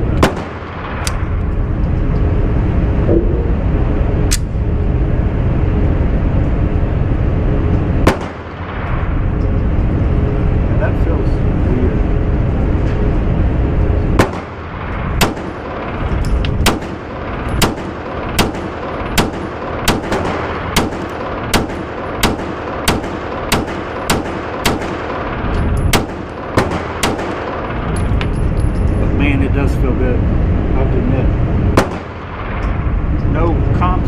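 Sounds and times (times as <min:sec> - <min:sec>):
steady background hum: 0:00.0 - 0:34.0
pistol shots echoing: 0:00.2 - 0:01.1, 0:08.1 - 0:08.7, 0:14.2 - 0:14.6, 0:15.2 - 0:15.8, 0:16.6 - 0:27.8, 0:31.8 - 0:32.6.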